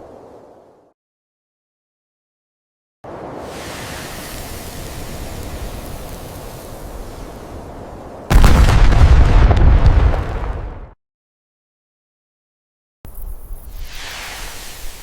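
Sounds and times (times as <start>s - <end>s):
explosion blast with crackling: 8.3s - 11.0s.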